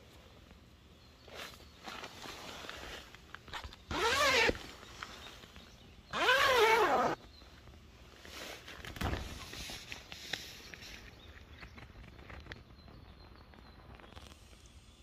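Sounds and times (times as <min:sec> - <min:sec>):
drawn-out voiced calls: 0:06.1 - 0:07.2.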